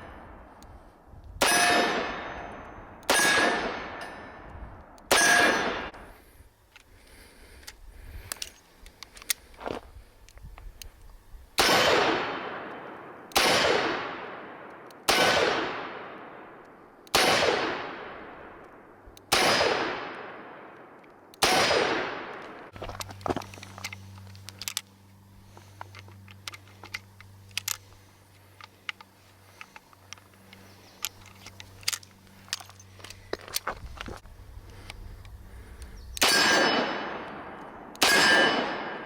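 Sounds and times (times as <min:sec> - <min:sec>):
revolver metallic clicks: 0:07.6 - 0:09.6, 0:16.5 - 0:38.8.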